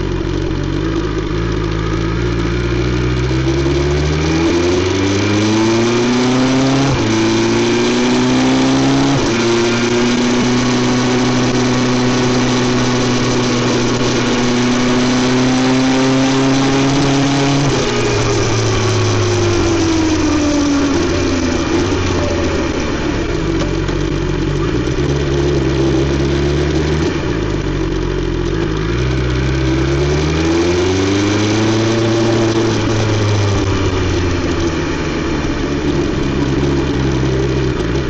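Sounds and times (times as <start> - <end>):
motorcycle engine accelerating: 0.0 - 38.0.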